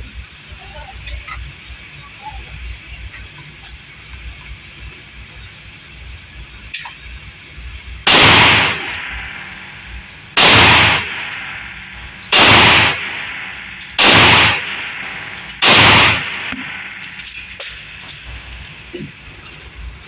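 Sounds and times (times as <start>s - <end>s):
pistol shots: 8.1s - 17.4s.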